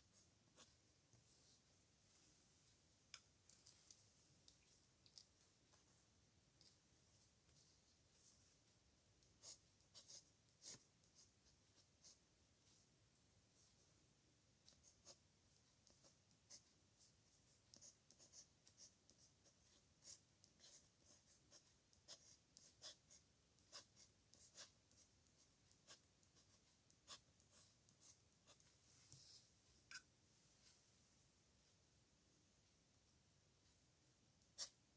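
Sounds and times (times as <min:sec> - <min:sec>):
pen scratching on paper: 0:09.4 - 0:12.2, 0:15.8 - 0:28.7.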